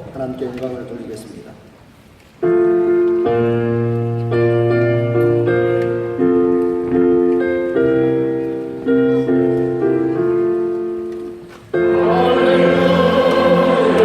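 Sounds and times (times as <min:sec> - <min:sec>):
piano playing slow chords: 0:02.4 - 0:14.0
congregation singing a hymn: 0:11.8 - 0:14.0.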